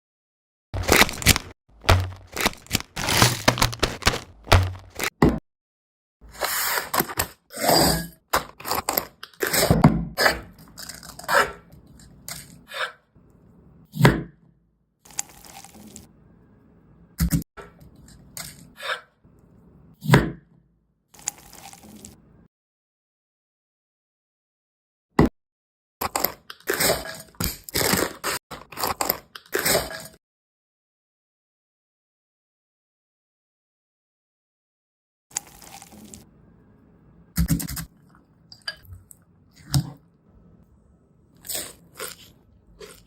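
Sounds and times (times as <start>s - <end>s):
kitchen knocks and scrapes: 0.8s - 5.4s.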